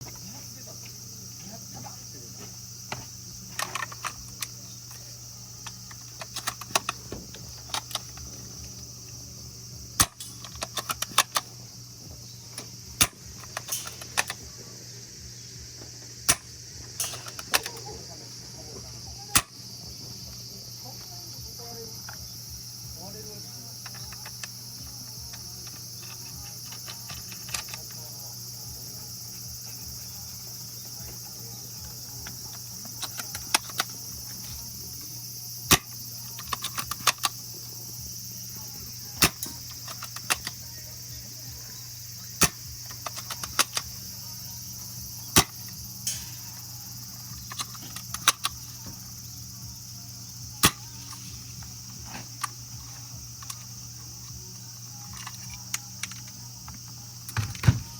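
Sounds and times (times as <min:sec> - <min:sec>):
rifle bolt clicks: 0:05.6 - 0:09.2, 0:10.0 - 0:11.5, 0:12.5 - 0:14.5, 0:16.3 - 0:17.9, 0:19.3 - 0:19.6, 0:23.8 - 0:28.0, 0:30.9 - 0:37.5, 0:38.6 - 0:40.7, 0:42.4 - 0:44.1, 0:44.7 - 0:49.0, 0:50.6 - 0:54.4, 0:55.0 - 0:57.7
airsoft rifle shots: 0:10.0 - 0:11.5, 0:16.3 - 0:18.0
high-pitched chirring: 0:22.1 - 0:57.3.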